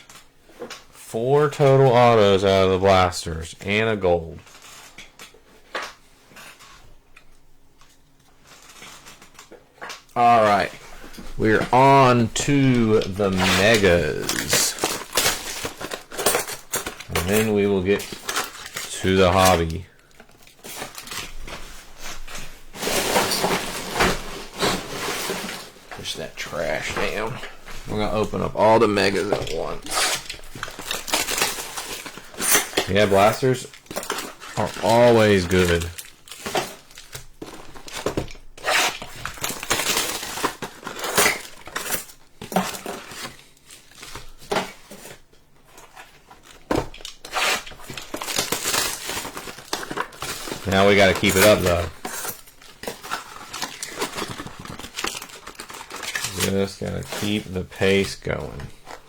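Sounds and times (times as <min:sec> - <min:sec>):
plastic and cardboard crinkling: 0:00.0 - 0:07.2, 0:07.8 - 0:59.0
cardboard ripping: 0:11.4 - 0:19.8, 0:46.0 - 0:58.4.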